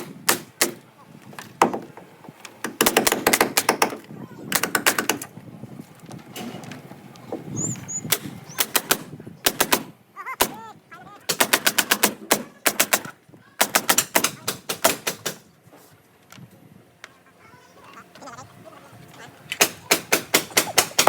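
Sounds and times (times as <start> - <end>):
nail gun firing in bursts: 0.0 - 0.8, 1.4 - 2.0, 2.6 - 5.3, 8.1 - 10.6, 11.3 - 15.5, 19.5 - 21.0.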